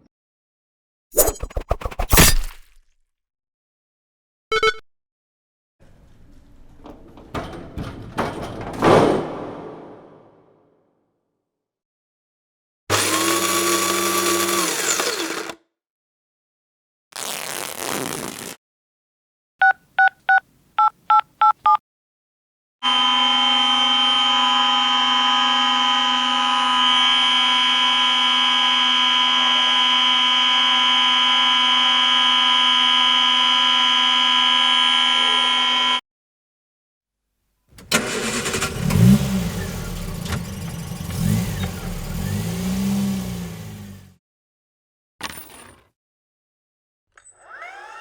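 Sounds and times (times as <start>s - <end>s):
quick two-tone beeps: 4.5s - 4.8s
long steady electronic tone: 22.8s - 36.0s.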